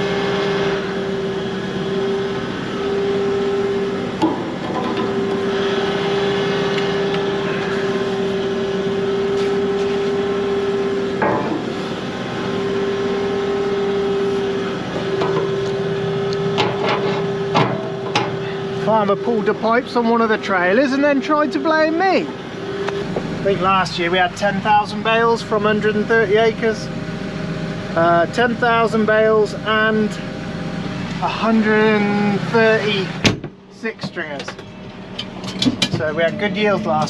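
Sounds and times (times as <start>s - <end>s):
tractor engine running: 0.0s - 37.0s
clunks: 4.2s - 5.5s, 11.1s - 12.0s, 14.9s - 18.6s, 33.2s - 37.0s.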